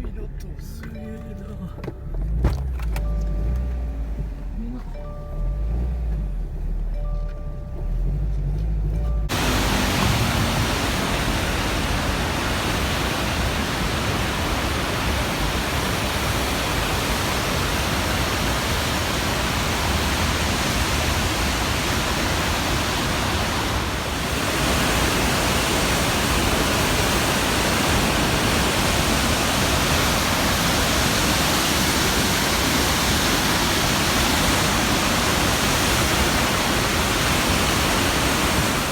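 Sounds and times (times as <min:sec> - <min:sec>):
rushing water roar: 0:09.3 - 0:38.9.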